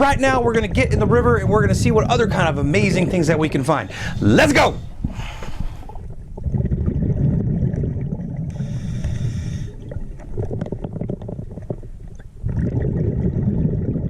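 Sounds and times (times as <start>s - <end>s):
bubbles gurgling underwater: 0.0s - 4.0s, 4.8s - 14.0s
hissing inhale through regulator: 3.9s - 6.2s, 8.5s - 10.1s.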